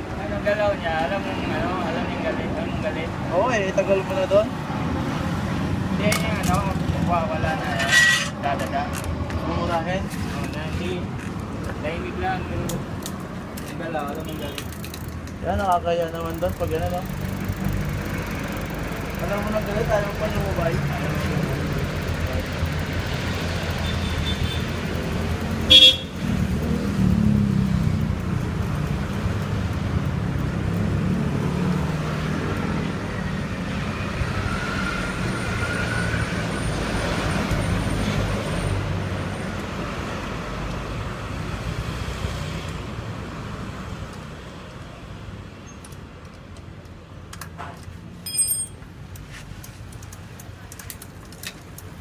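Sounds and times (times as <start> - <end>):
traffic engine rumble: 0.0 - 52.0
vehicle horn toot: 25.7 - 26.2.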